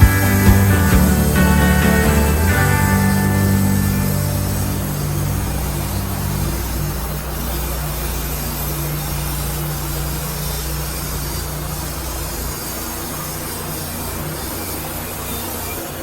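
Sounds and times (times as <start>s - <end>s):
engine humming: 0.0s - 9.8s.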